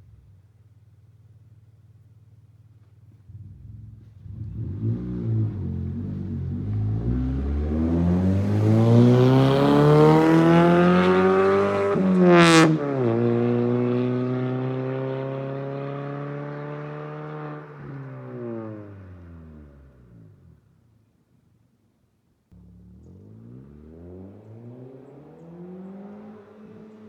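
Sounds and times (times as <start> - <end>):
car engine revving: 3.2 - 20.4, 22.6 - 27.0.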